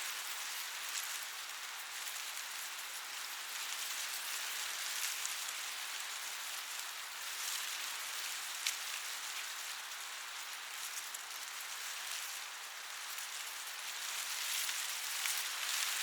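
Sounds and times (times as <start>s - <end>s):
wind rustling corn leaves: 0.0s - 16.0s
small ticks: 8.6s - 9.7s, 13.1s - 16.0s.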